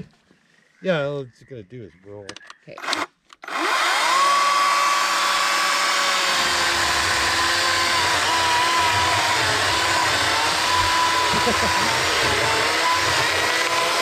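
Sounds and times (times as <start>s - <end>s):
electric saw cutting log: 2.8s - 14.0s.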